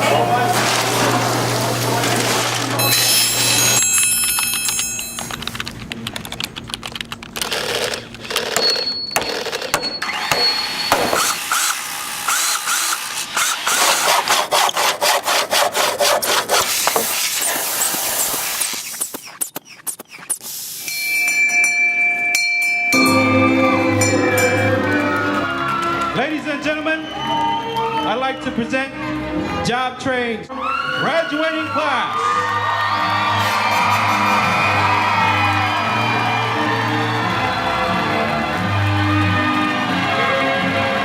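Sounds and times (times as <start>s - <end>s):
fast repeated strokes: 7.6s - 20.8s
thin high beep: 8.6s - 11.0s
steady pitched tones: 23.0s - 25.5s.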